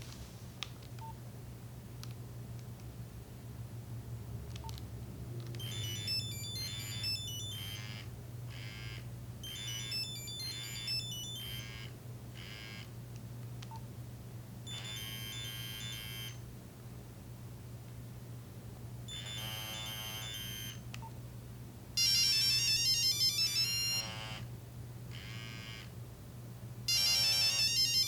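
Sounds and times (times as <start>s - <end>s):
phone beeping ringtone tune: 5.6s - 12.8s, 14.7s - 16.4s, 19.1s - 20.8s, 22.0s - 24.4s, 26.9s - 28.0s.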